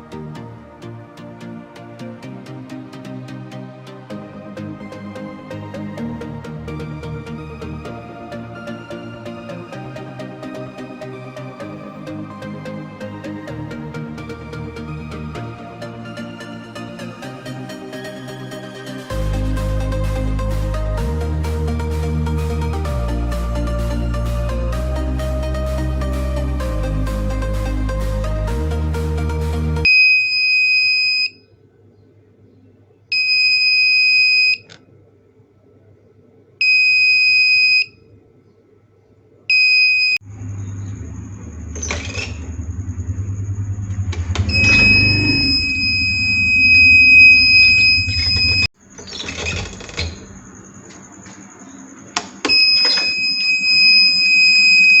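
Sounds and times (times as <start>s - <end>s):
shrill electronic buzzer: 29.8s - 31.4s, 39.5s - 48.7s, 52.4s - 55.0s
higher buzzer tone: 40.0s - 48.7s, 52.5s - 55.0s.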